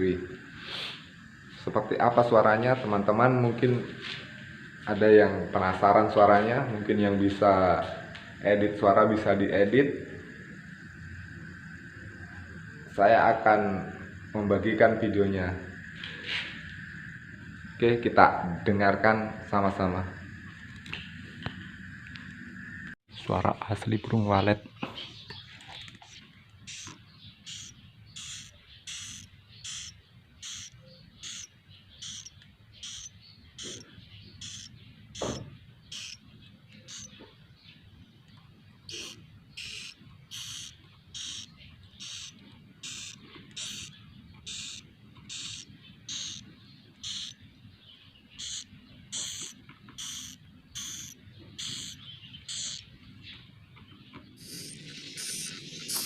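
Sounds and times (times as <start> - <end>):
low steady hum: 0.0 - 56.0
bird chicks chirping: 24.1 - 56.0.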